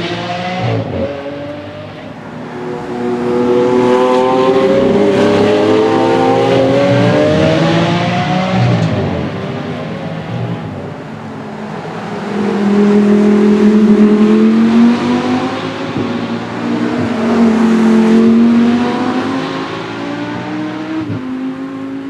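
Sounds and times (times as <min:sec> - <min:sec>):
sports car engine accelerating: 0:00.0 - 0:22.0.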